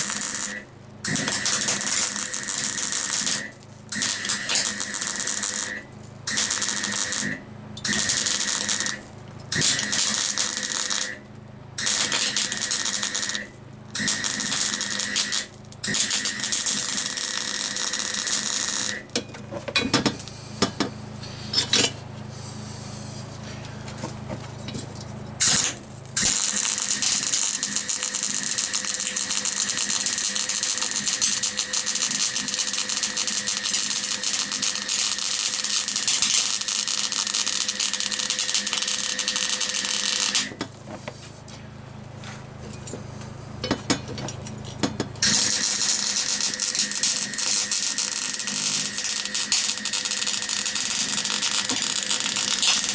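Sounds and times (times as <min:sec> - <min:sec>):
welding arc crackling: 0:00.0 - 0:19.1, 0:25.4 - 0:40.6, 0:45.2 - 0:52.9.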